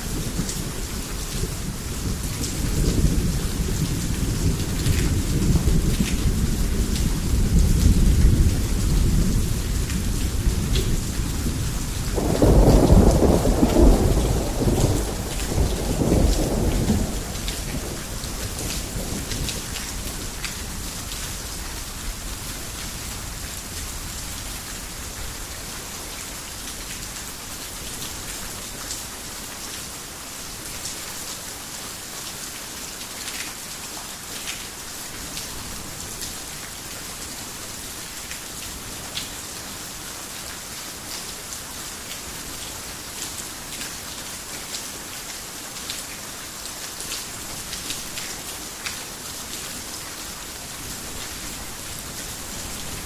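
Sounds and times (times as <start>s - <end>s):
heavy rain falling: 0.0s - 53.0s
low thunder rumble: 2.6s - 20.4s.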